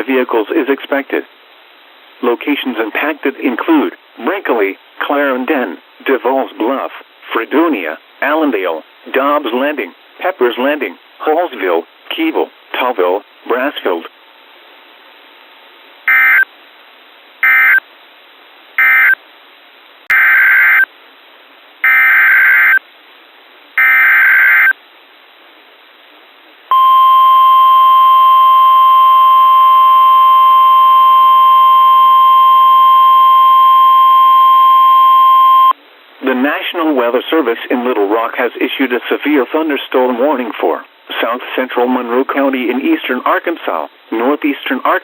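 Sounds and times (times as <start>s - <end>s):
steady alarm tone: 16.1s - 16.5s, 17.4s - 17.8s, 18.8s - 19.2s, 20.1s - 20.9s, 21.8s - 22.8s, 26.7s - 35.8s.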